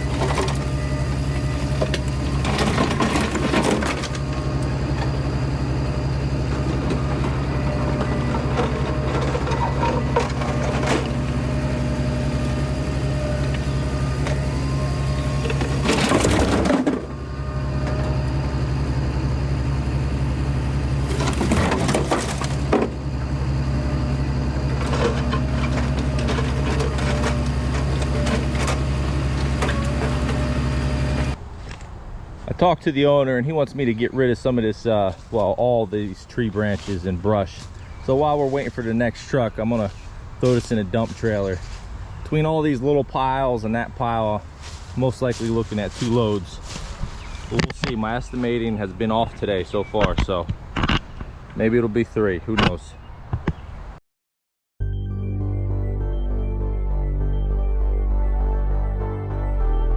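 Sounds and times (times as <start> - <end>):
excavator diesel engine running: 0.0 - 31.4
bucket crunching rubble: 1.8 - 13.6, 15.4 - 19.0, 21.0 - 30.5.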